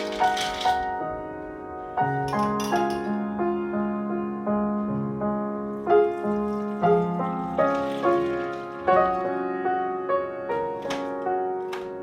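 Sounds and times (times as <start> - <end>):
piano music: 0.0 - 12.0.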